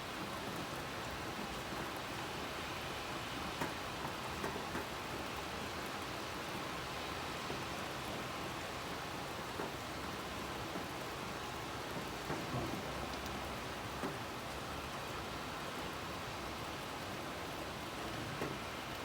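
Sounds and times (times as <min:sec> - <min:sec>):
steady rain falling: 0:00.0 - 0:19.0
rain drop taps: 0:03.6 - 0:04.9, 0:14.0 - 0:14.2.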